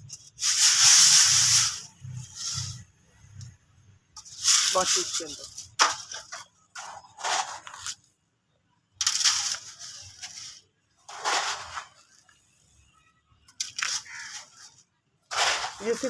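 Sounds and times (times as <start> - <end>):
sand shaken through sifter: 0.2 - 2.9, 4.2 - 5.7.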